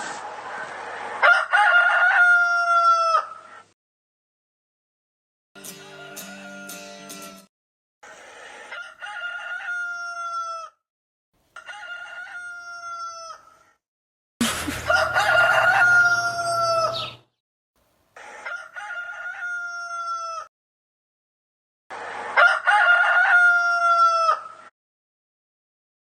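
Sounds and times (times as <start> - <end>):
rooster crowing: 1.2 - 3.6, 5.7 - 7.4, 8.5 - 10.8, 11.6 - 13.8, 14.9 - 17.2, 18.2 - 20.5, 22.3 - 24.7.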